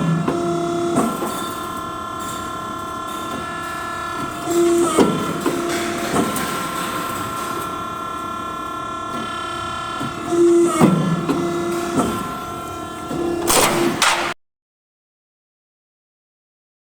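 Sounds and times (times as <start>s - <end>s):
machine clunks: 13.3s - 14.4s.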